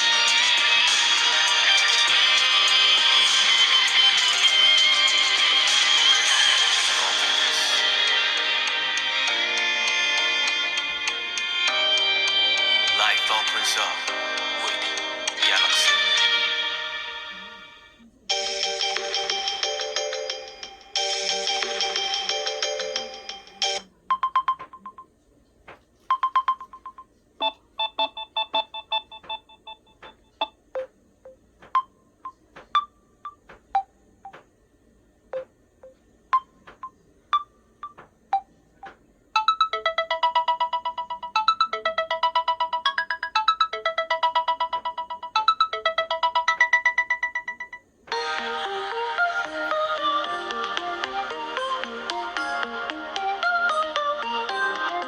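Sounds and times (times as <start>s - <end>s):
ringtone melody of struck notes: 0.0s - 17.2s, 18.3s - 25.0s, 39.4s - 55.0s.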